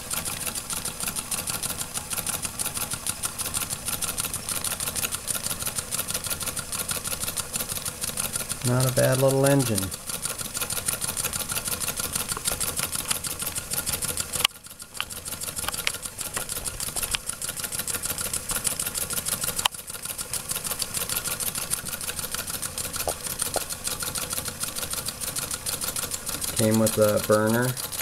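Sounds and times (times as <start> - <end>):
sharp clicks: 0.0 - 28.0
toy steam engine ticking: 0.0 - 28.0.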